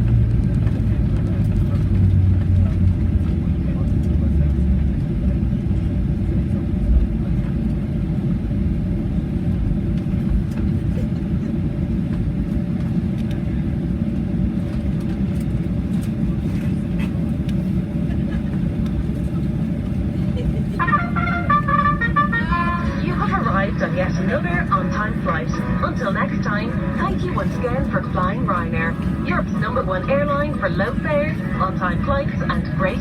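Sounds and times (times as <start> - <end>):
airplane cabin low rumble: 0.0 - 33.0
cabin announcement over speaker: 20.6 - 33.0.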